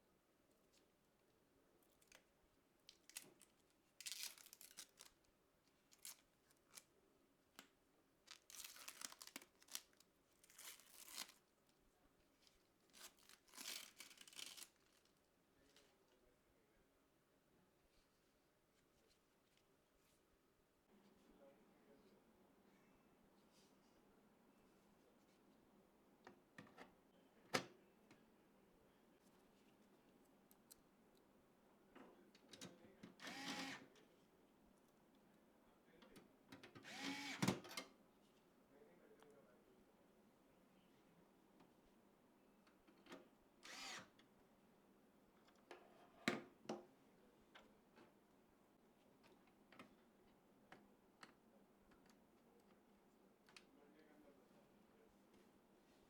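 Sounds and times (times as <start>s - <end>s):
plastic packaging crinkling: 2.9s - 6.9s, 8.2s - 11.5s, 12.4s - 15.2s.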